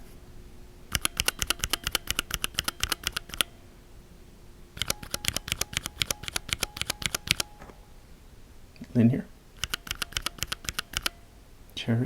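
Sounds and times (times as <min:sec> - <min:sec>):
mechanical key switch presses: 0:00.9 - 0:03.5, 0:04.8 - 0:07.8
spring ping: 0:04.8 - 0:08.0.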